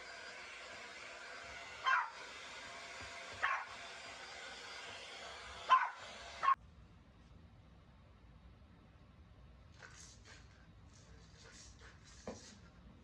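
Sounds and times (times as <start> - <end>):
vacuum cleaner whirring: 0.0 - 6.6
dog barking in sharp yaps: 1.8 - 2.2, 3.4 - 3.8, 5.7 - 6.6.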